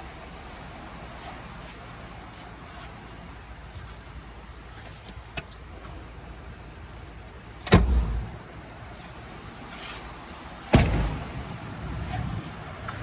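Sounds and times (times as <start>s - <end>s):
truck door shutting: 7.6s - 8.4s, 10.7s - 13.0s.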